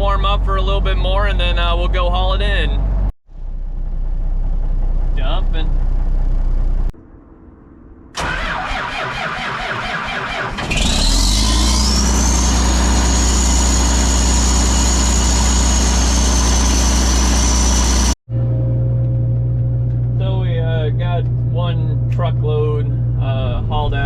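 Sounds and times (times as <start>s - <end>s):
diesel engine cranking and running: 2.5s - 24.0s
high whine: 11.6s - 24.0s.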